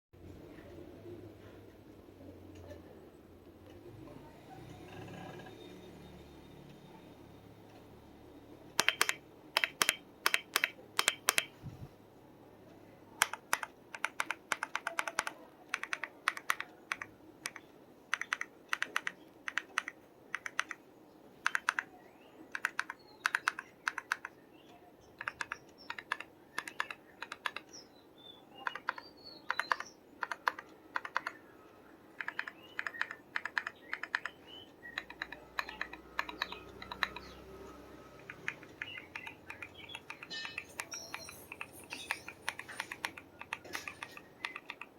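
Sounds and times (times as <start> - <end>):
mechanical keyboard key clacks: 8.8 - 11.5, 13.2 - 20.8, 21.4 - 21.9, 28.6 - 31.4, 35.0 - 37.4.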